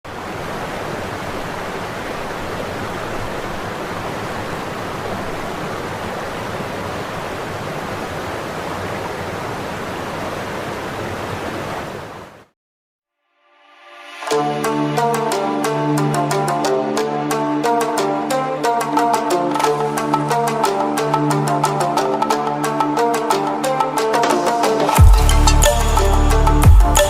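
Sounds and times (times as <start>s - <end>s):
waterfall rushing: 0.1s - 12.5s, 14.3s - 27.0s.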